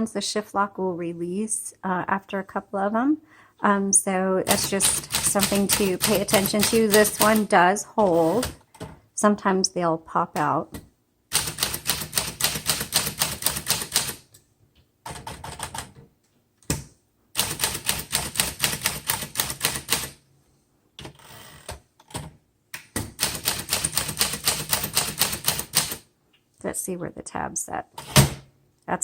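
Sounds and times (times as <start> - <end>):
manual typewriter keys clacking: 4.5 - 7.5, 11.3 - 14.2, 17.4 - 20.2, 23.2 - 26.0.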